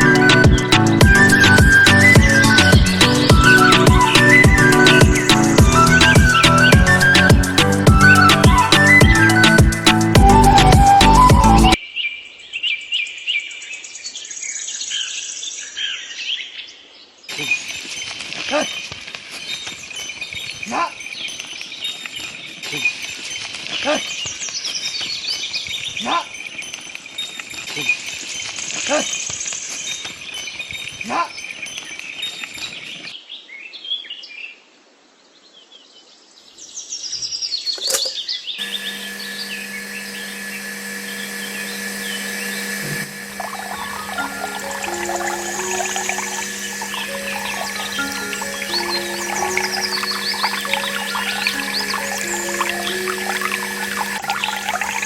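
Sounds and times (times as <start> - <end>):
electronic music with drum beat: 0.0 - 11.8
bird chirping: 36.7 - 55.0.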